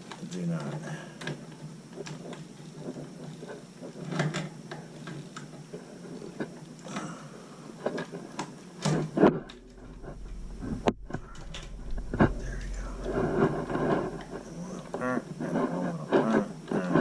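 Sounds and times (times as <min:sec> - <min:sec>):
loud knocks: 0:09.2 - 0:15.0.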